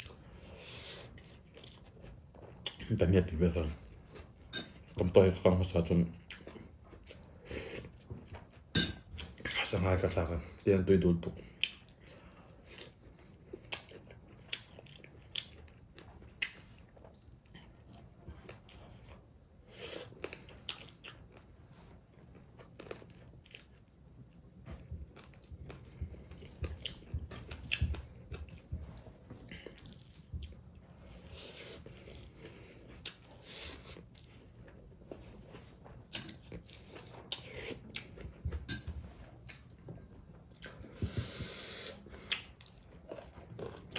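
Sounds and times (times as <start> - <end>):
person chewing food: 0.0 - 5.1, 6.1 - 9.6, 11.4 - 43.9.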